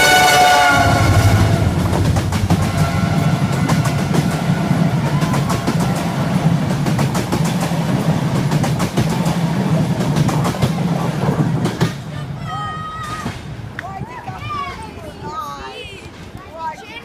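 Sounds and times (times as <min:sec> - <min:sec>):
train rumble: 0:00.0 - 0:15.2
wheels clattering over rails: 0:01.0 - 0:12.4.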